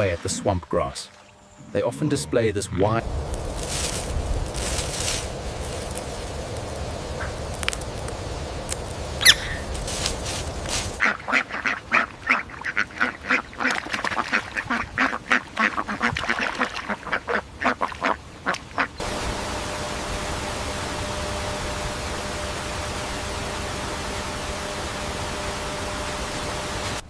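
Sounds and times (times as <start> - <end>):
steady hiss: 1.6 - 11.1, 19.0 - 27.0
ducks quacking: 11.0 - 19.0.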